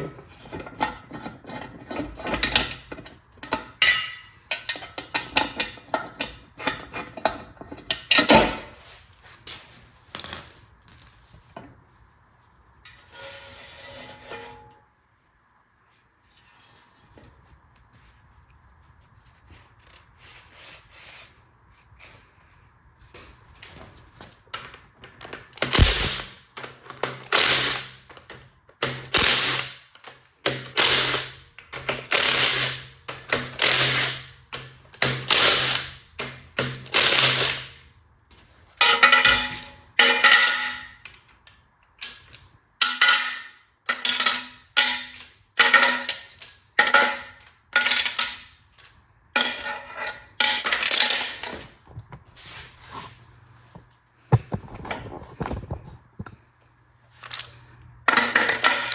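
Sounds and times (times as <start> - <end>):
power wrench spinning bolts: 27.2 - 28.0, 29.0 - 29.8, 30.5 - 34.3, 35.1 - 36.0, 36.9 - 37.8.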